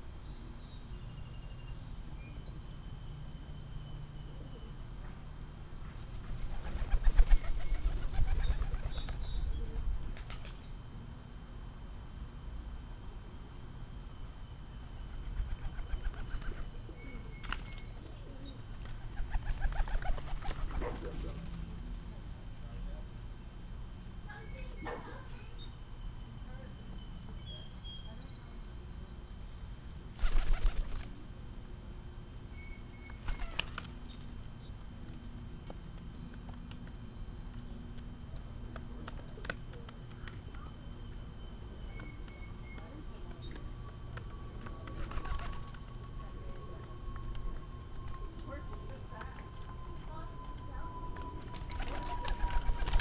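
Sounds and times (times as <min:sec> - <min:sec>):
pigeons flapping wings: 0:06.2 - 0:10.6, 0:15.2 - 0:16.7, 0:18.7 - 0:22.0, 0:30.2 - 0:31.2, 0:33.2 - 0:34.2, 0:38.7 - 0:40.7, 0:42.8 - 0:50.6, 0:51.2 - 0:53.0
steady low rumble: 0:42.8 - 0:53.0
faint high chirps: 0:44.5 - 0:53.0.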